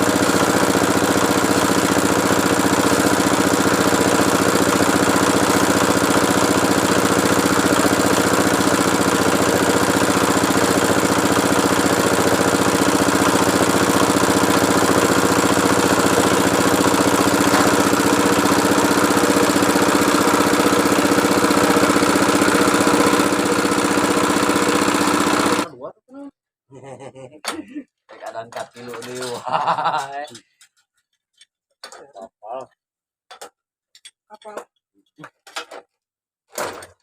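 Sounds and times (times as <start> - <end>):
small engine running steadily: 0.0 - 25.7.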